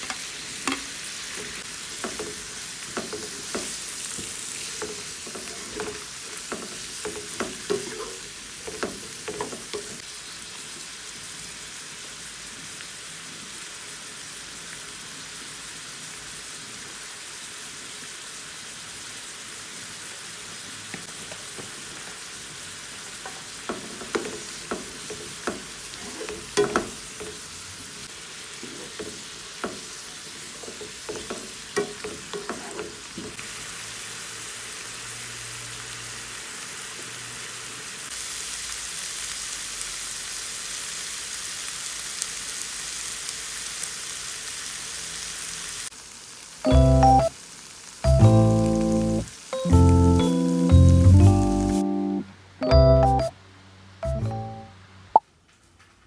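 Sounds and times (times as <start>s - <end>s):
food sizzling in a pan: 0.0s - 52.0s
utensil clattering against pan: 23.2s - 27.5s.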